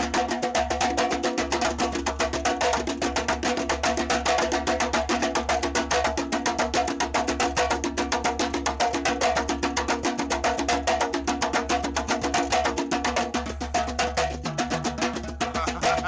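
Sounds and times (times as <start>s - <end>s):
hand drum fast strokes: 0.0s - 16.0s.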